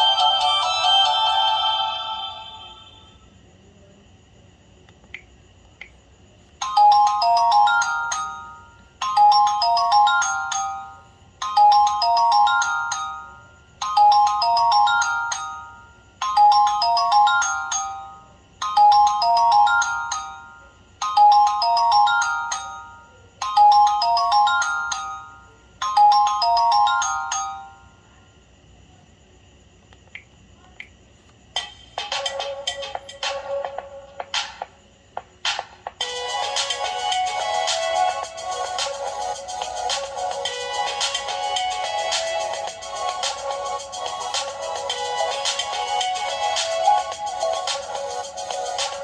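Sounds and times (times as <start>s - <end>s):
flip phone ringtone: 0.0s - 3.0s, 16.4s - 18.2s.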